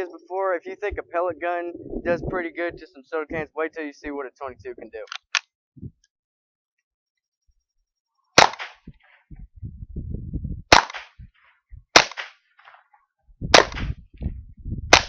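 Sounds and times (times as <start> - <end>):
low rumble: 0.2 - 3.5, 9.3 - 11.9, 13.3 - 15.0
rifle shots: 8.4 - 8.9, 10.7 - 11.2, 12.0 - 12.4, 13.6 - 13.9.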